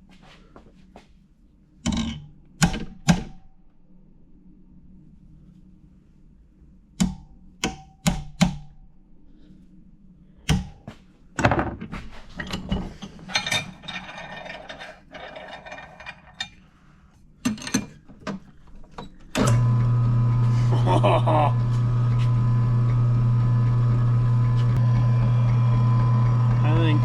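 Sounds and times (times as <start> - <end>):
metal rattling and scraping: 11.8 - 16.6
metal knocks and clinks: 12.4 - 16.6
electric motor humming: 19.4 - 27.0.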